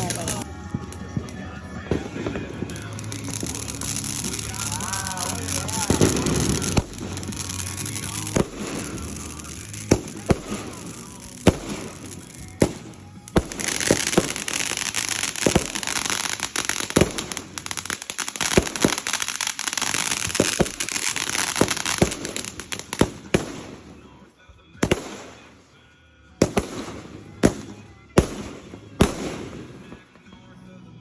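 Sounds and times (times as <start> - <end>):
fireworks crackling hiss: 0.0 - 24.2
fireworks bangs: 0.0 - 30.5.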